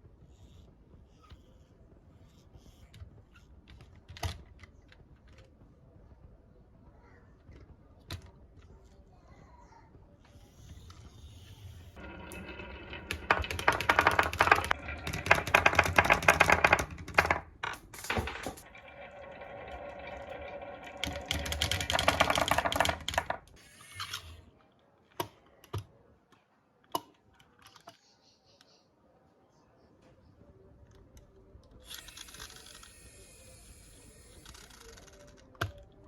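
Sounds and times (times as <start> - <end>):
marbles clattering down wooden run: 12.0 - 23.6.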